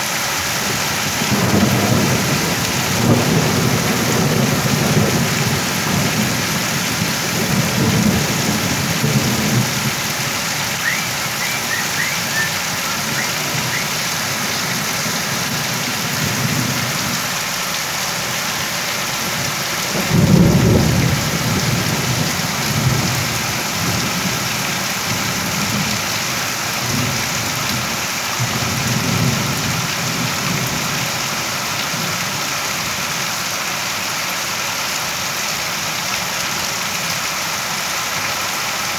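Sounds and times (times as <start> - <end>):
heavy rain: 0.0 - 38.9
thunder rumbling: 1.0 - 17.1, 19.3 - 25.8.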